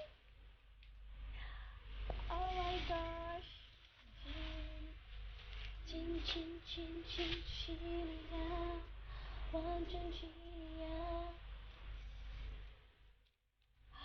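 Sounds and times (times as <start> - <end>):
woman humming: 4.2 - 5.0.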